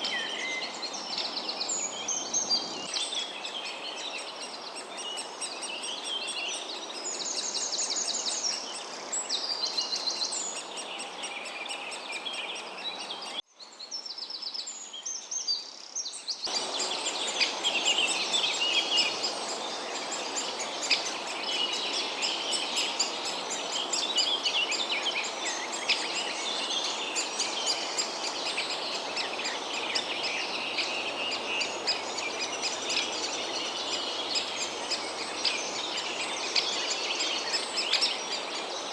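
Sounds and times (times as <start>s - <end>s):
birds chirping and trilling: 0.0s - 38.9s.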